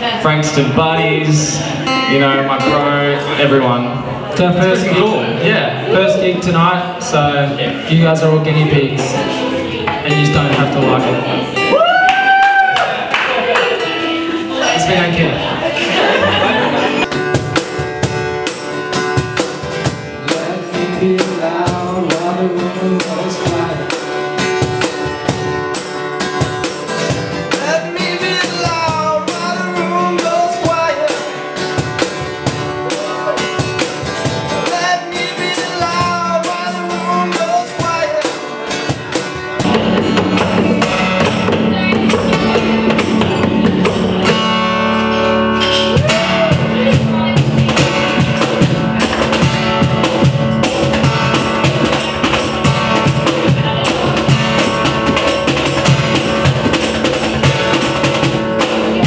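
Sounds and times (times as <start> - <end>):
guitar: 0.0 - 59.0
drums and bass: 15.5 - 59.0
person singing: 20.2 - 24.8, 27.5 - 31.4, 32.6 - 38.5.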